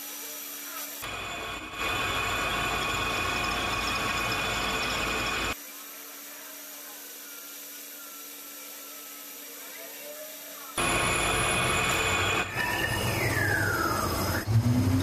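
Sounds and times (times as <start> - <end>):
power tool cutting metal: 0.0 - 6.4, 10.2 - 14.4.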